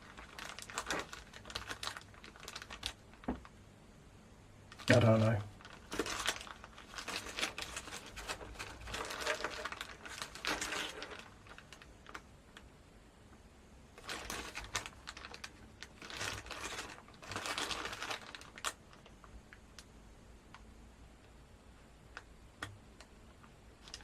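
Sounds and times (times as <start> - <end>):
small hardware items rustling: 4.8 - 12.2.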